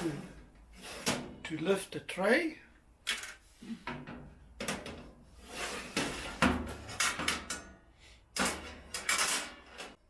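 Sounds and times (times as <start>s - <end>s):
metal tray scraping slide: 0.0s - 1.3s, 5.4s - 7.0s.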